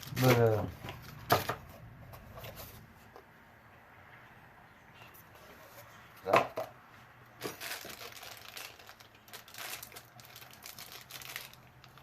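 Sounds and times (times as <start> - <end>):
packaging crinkling and rustling: 0.0 - 1.7, 7.4 - 12.0.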